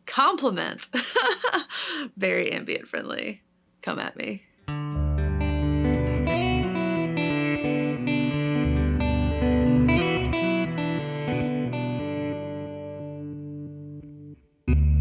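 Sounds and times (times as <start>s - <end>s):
ambient electric guitar chords: 4.7s - 15.0s.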